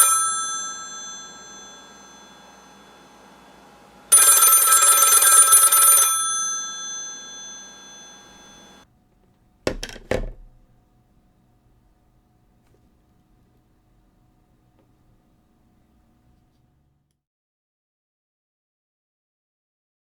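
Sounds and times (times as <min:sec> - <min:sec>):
telephone bells ringing: 0:00.0 - 0:08.8.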